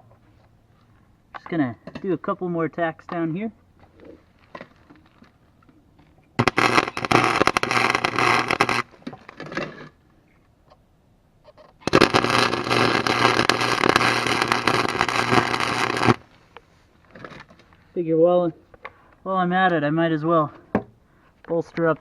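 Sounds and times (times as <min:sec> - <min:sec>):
arc welder crackling: 0:06.4 - 0:10.0, 0:11.8 - 0:16.4
electrical hum: 0:11.9 - 0:16.2.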